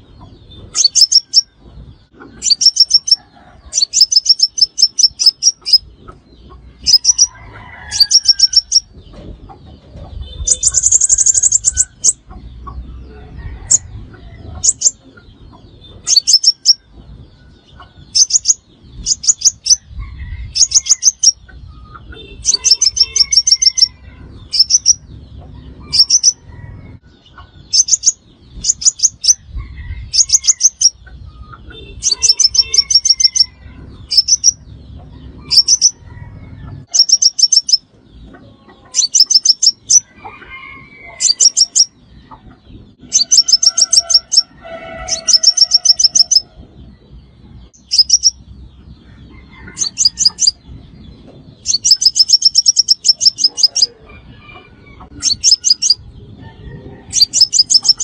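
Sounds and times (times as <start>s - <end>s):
bird trilling: 0.0s - 9.0s, 10.0s - 16.9s, 17.7s - 36.1s, 36.8s - 37.9s, 38.9s - 42.0s, 43.0s - 46.6s, 47.7s - 48.4s, 49.5s - 50.6s, 51.6s - 56.0s, 57.0s - 58.0s.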